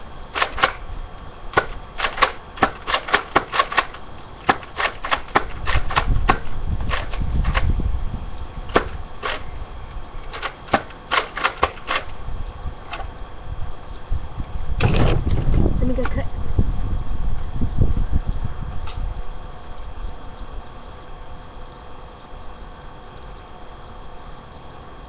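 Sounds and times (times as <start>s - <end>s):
toy dart blaster clacks and pops: 0.4s - 0.8s, 1.6s - 7.7s, 8.7s - 9.4s, 10.3s - 12.1s.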